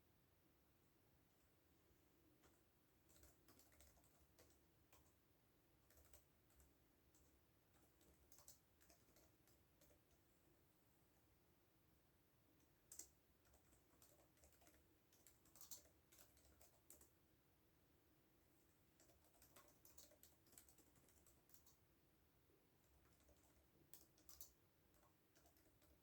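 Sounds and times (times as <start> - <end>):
typing on computer keyboard: 2.4 - 5.2, 5.8 - 10.2, 12.8 - 17.2, 18.9 - 21.8, 22.9 - 26.0.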